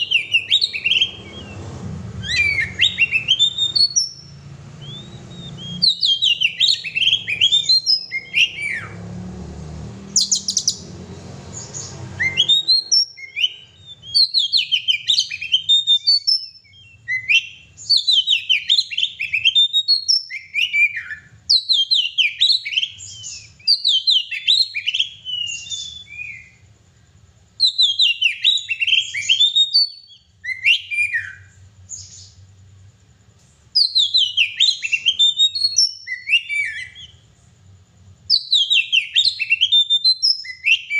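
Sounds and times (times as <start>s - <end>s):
songbird singing high notes: 0.0s - 9.1s, 10.0s - 26.6s, 33.8s - 37.2s, 38.3s - 40.9s.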